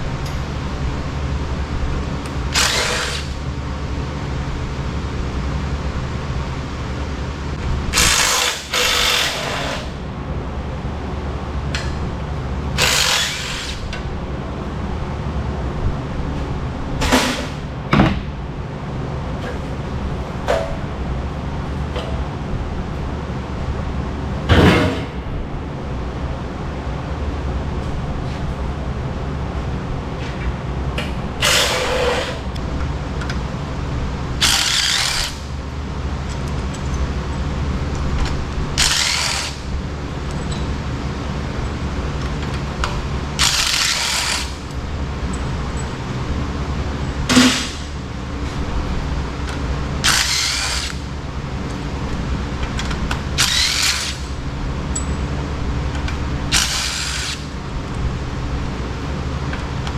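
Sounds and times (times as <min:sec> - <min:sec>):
steady low hum: 0:00.0 - 0:59.9
power drill bursts: 0:02.5 - 0:03.4, 0:08.0 - 0:09.9, 0:12.8 - 0:13.9, 0:31.4 - 0:32.5, 0:34.4 - 0:35.5, 0:38.8 - 0:39.7, 0:43.4 - 0:44.6, 0:50.0 - 0:51.1, 0:53.4 - 0:54.3, 0:56.5 - 0:57.5.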